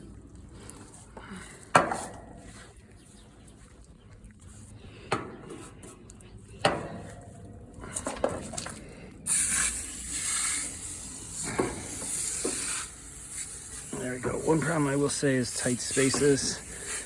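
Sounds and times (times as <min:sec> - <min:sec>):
spray nozzle hissing: 0:09.3 - 0:17.0.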